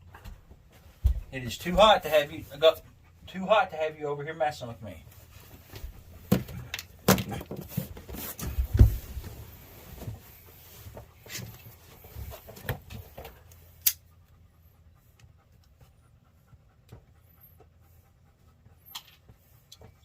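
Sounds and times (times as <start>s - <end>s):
dog panting: 1.0s - 6.3s, 9.5s - 20.0s.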